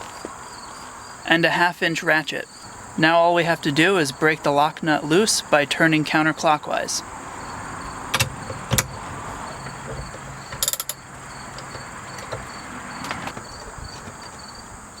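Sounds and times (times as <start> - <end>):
ratchet clicking: 8.1 - 9.0, 9.6 - 12.5
sharp metallic clicks: 8.1 - 13.4.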